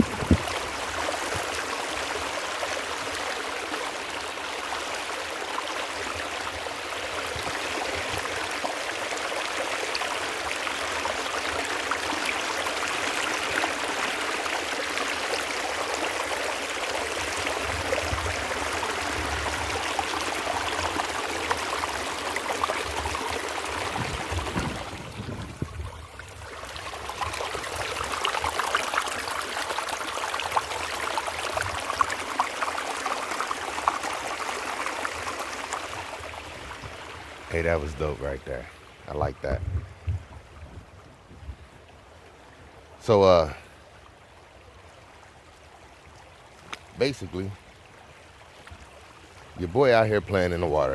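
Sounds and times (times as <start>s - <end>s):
creek water running: 0.0s - 50.9s.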